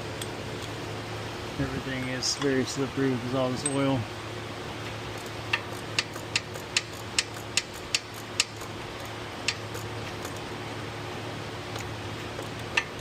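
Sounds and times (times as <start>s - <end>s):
low steady hum: 0.0s - 13.0s
ratchet clicking: 5.2s - 10.4s.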